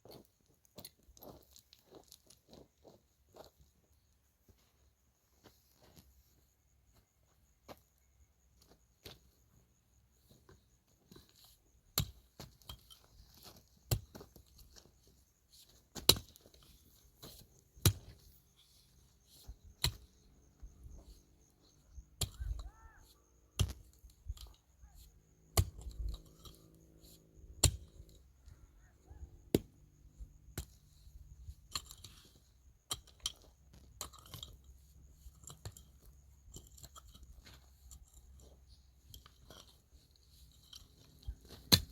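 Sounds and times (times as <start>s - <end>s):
small clicks and scrapes: 10.4s - 28.4s, 30.5s - 41.9s.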